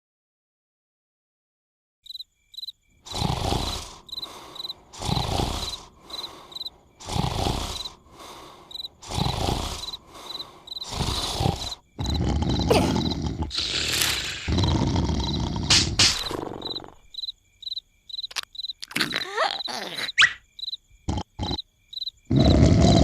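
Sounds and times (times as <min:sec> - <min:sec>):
crickets chirping: 0:02.0 - 0:23.0
cartoon snoring: 0:03.1 - 0:17.1, 0:18.8 - 0:20.4, 0:21.1 - 0:21.7, 0:22.3 - 0:23.0.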